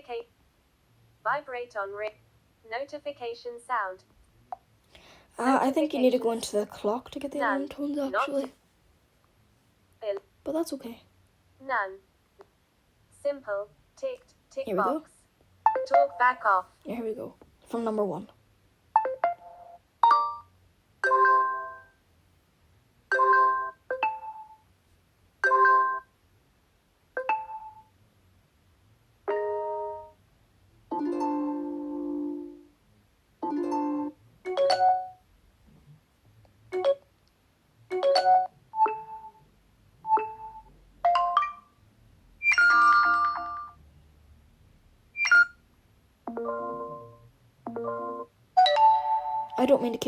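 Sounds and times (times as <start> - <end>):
phone notification chimes: 15.7 - 16.4.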